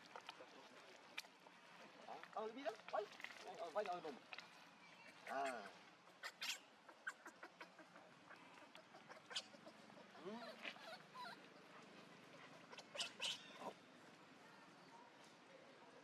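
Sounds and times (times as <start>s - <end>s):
monkeys squeaking and calling: 5.2s - 11.4s, 12.7s - 13.7s.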